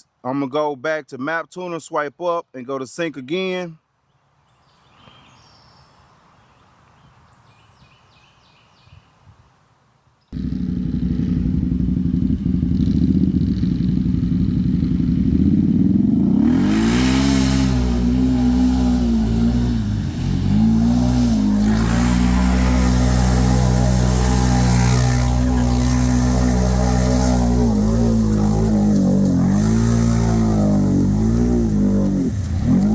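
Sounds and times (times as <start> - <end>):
side-by-side engine revving: 10.4 - 32.9.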